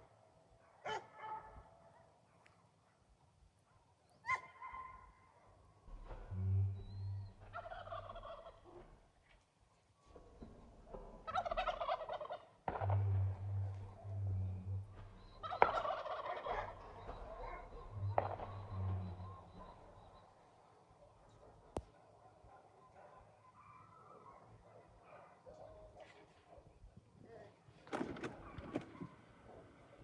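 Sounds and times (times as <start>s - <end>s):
warbling gobble-like animal call: 5.9s - 9.1s, 10.4s - 20.6s.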